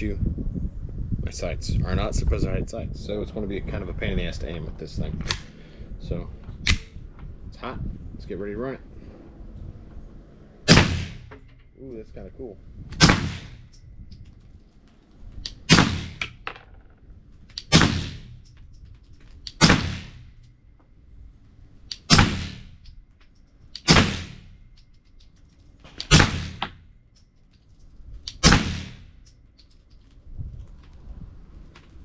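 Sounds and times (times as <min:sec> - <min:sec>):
suppressed pistol shots: 0:10.7 - 0:11.3, 0:13.0 - 0:13.7, 0:15.5 - 0:16.4, 0:17.6 - 0:18.4, 0:19.5 - 0:20.3, 0:21.9 - 0:22.7, 0:23.8 - 0:24.5, 0:26.0 - 0:26.8, 0:28.3 - 0:29.1.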